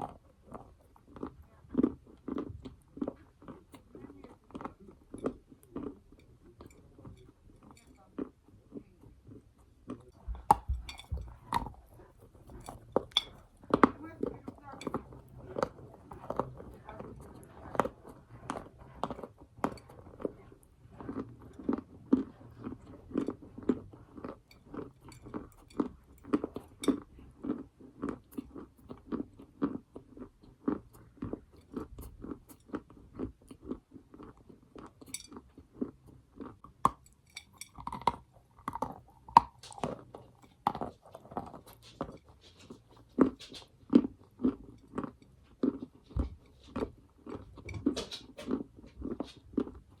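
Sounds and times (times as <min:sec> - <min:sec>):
person chewing crunchy chalk: 0:07.1 - 0:50.0.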